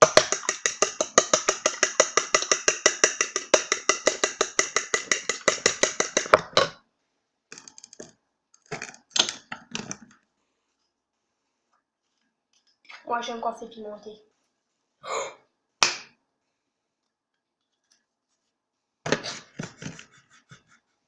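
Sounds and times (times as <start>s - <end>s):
fork beating eggs in bowl: 0.0s - 6.7s
scattered taps and clinks: 0.0s - 6.7s.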